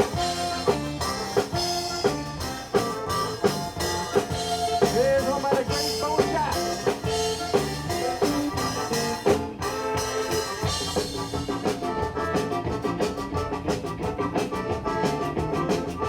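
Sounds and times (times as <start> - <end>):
upbeat instrumental music: 0.0 - 16.0.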